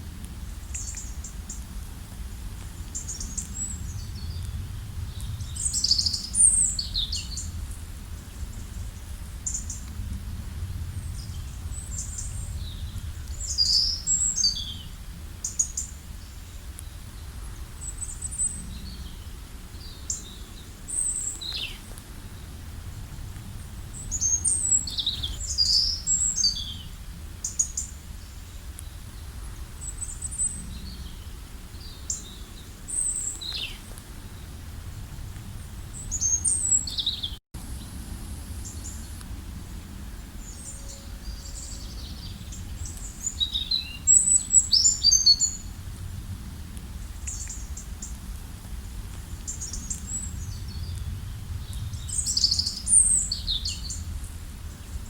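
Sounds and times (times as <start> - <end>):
low steady rumble: 0.0 - 33.0
songbirds chirping and trilling: 0.3 - 34.7, 35.5 - 38.0, 38.6 - 55.0.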